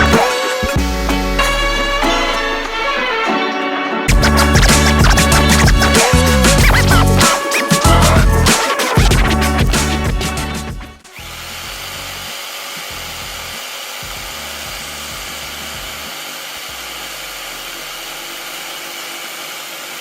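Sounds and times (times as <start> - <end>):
power tool running: 0.0 - 3.5, 11.0 - 20.0.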